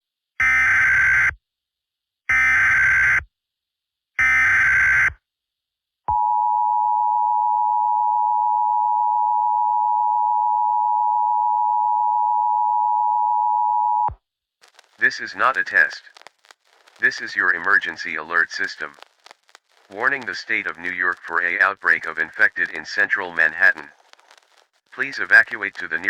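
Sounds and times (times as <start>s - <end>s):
warbling digital data bursts: 14.6s - 26.0s.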